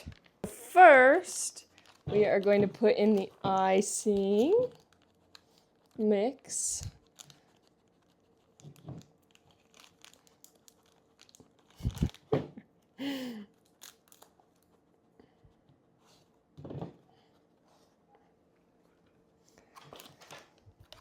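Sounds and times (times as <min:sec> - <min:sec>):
packet crinkling and tearing: 0:01.4 - 0:12.3, 0:13.5 - 0:14.8.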